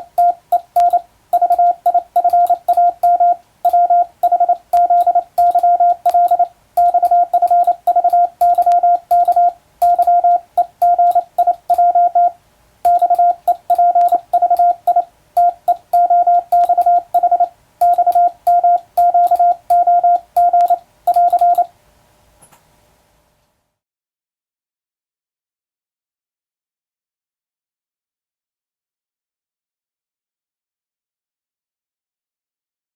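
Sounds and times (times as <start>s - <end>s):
morse code beeps: 0.0s - 21.7s.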